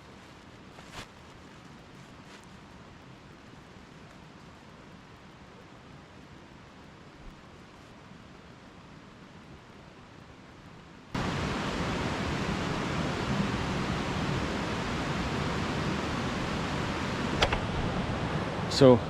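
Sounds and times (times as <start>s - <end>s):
river water rushing: 11.2s - 19.0s.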